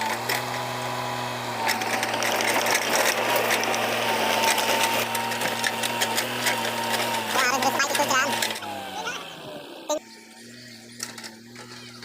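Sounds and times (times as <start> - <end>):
excavator engine running: 0.0 - 12.0
machine rattling and clicking: 1.6 - 8.7.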